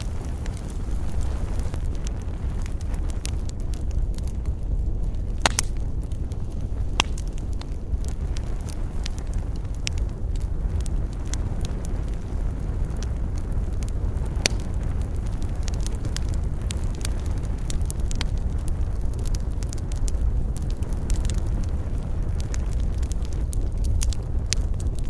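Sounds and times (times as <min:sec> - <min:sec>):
campfire crackling and popping: 0:00.0 - 0:25.0
steady low rumble: 0:00.0 - 0:25.0.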